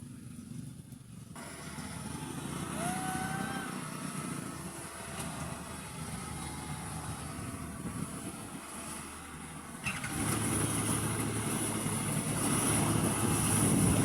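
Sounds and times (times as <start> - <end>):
combine harvester engine running: 0.0 - 14.0.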